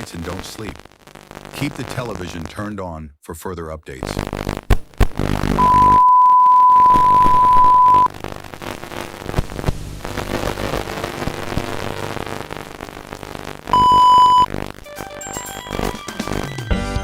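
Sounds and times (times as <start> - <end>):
tv static hiss: 0.0 - 2.8, 3.9 - 16.6
high broadcast test tone: 5.2 - 14.8.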